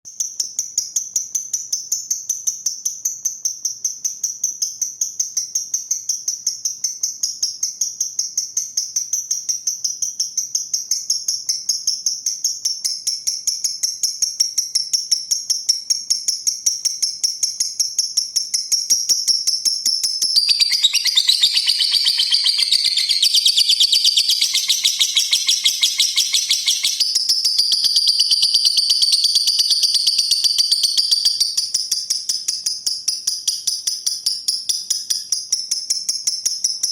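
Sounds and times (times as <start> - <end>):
lovebird chirping and chattering: 20.2 - 32.8.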